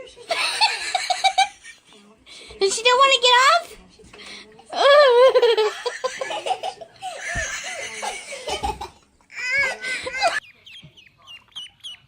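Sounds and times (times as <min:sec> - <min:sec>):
people laughing: 0:00.2 - 0:01.8, 0:04.8 - 0:10.4
bird chirping: 0:10.4 - 0:12.0.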